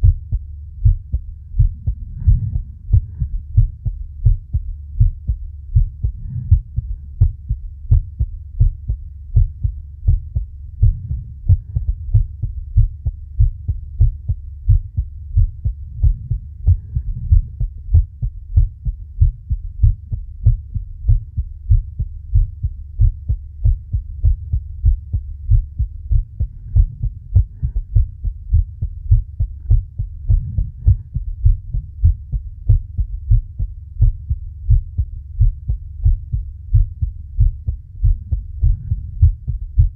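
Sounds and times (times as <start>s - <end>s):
heartbeat thumps: 0.0s - 39.9s
faint breathing: 0.8s - 4.4s, 5.6s - 8.1s, 9.2s - 13.1s, 14.7s - 18.4s, 25.2s - 32.3s, 38.1s - 39.9s.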